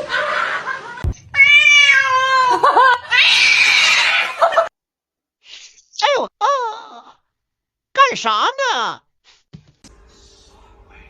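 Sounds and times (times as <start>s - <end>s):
cat meowing loudly: 1.2s - 4.4s.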